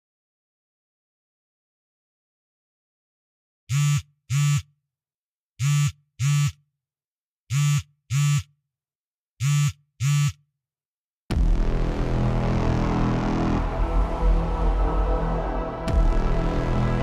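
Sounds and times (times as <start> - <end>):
low electronic buzz pulses: 11.3 - 17.0.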